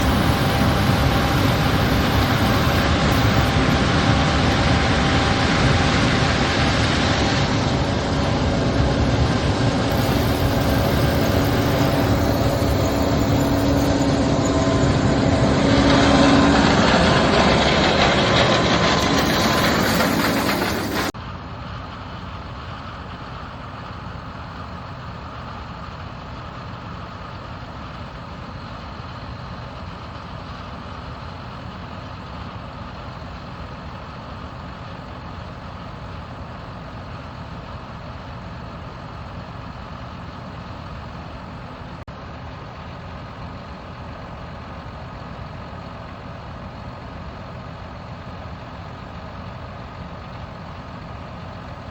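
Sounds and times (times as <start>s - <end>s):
loud harsh machine noise: 0.0s - 21.2s
heavy machinery engine running: 0.0s - 51.9s.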